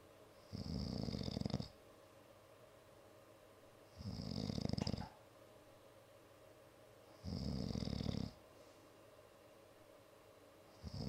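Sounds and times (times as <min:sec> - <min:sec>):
person snoring: 0:00.5 - 0:01.7, 0:04.0 - 0:05.1, 0:07.2 - 0:08.4.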